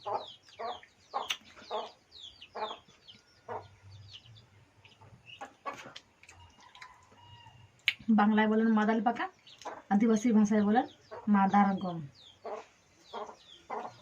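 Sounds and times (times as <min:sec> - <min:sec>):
chicken clucking: 0:00.0 - 0:07.6, 0:12.4 - 0:14.0.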